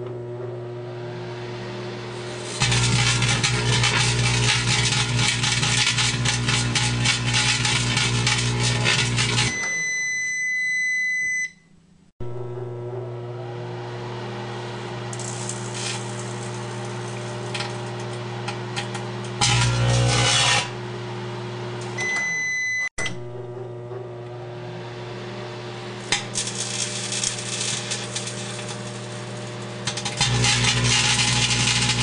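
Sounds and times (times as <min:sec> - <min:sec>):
microwave oven humming: 0:00.0 - 0:32.0
electrical arcing crackles: 0:02.2 - 0:09.5, 0:15.1 - 0:18.1, 0:26.0 - 0:32.0
microwave beep: 0:08.5 - 0:12.6, 0:21.9 - 0:23.6.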